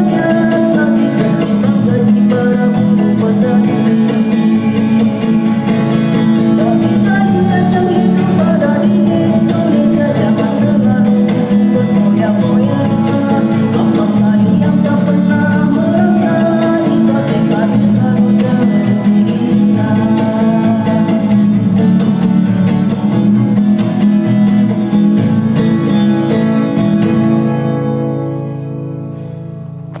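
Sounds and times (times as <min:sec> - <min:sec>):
man singing: 0:00.0 - 0:23.1
guitar: 0:00.0 - 0:30.0.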